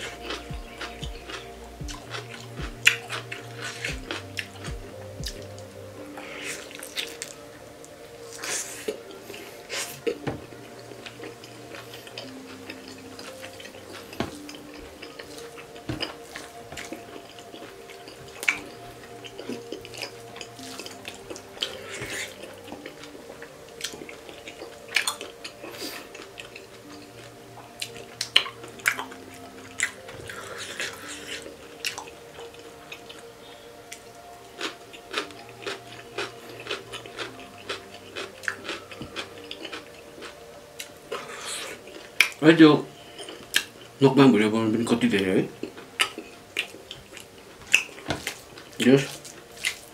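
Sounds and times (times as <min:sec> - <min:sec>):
wet chewing and mouth smacks: 0:00.0 - 0:07.4, 0:33.9 - 0:42.4, 0:45.6 - 0:49.9
soft background music: 0:00.0 - 0:49.9.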